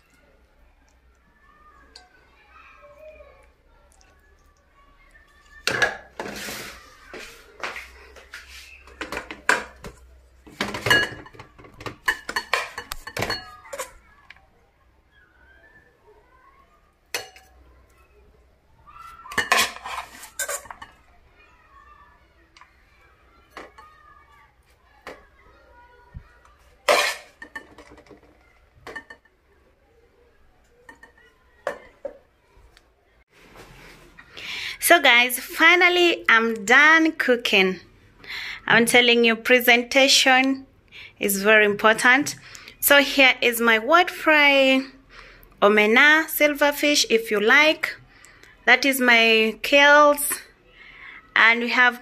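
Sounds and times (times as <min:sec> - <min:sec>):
serving spoon clinking on dishes: 0:10.6 - 0:14.0, 0:17.1 - 0:17.6, 0:19.3 - 0:21.0, 0:26.9 - 0:28.1.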